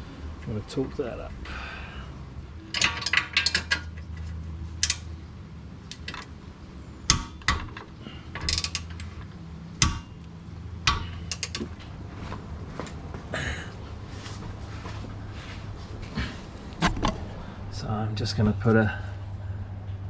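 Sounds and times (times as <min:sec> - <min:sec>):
ratcheting torque wrench clicking: 0:04.8 - 0:05.1, 0:07.3 - 0:09.3, 0:10.9 - 0:11.7.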